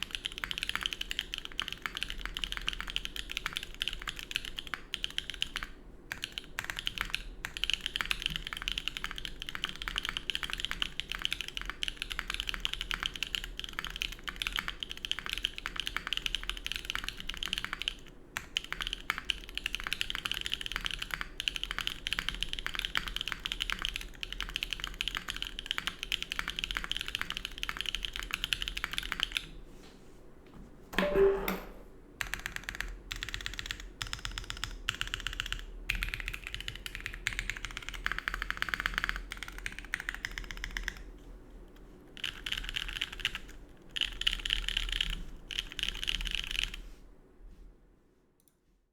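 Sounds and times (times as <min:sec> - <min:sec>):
mechanical keyboard typing: 0:00.0 - 0:29.5, 0:31.0 - 0:41.1, 0:42.2 - 0:46.8
knock with ringing tone: 0:31.0 - 0:31.8.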